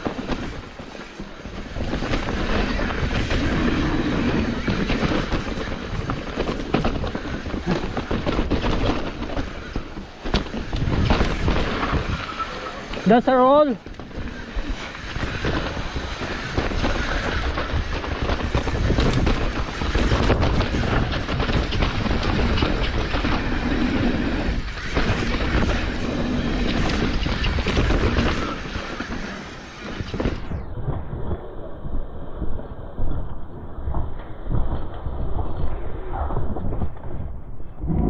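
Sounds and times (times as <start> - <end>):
tyre noise on dirt and rock: 0.0 - 13.1
bike chain and frame rattle: 0.0 - 30.5.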